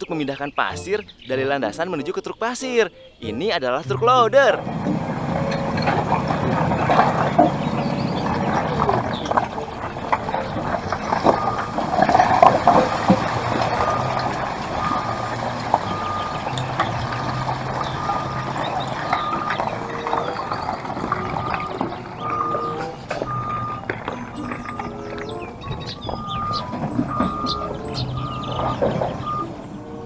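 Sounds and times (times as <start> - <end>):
low engine-like drone: 4.6 - 30.0
reversing alarm beeps: 5.5 - 29.7.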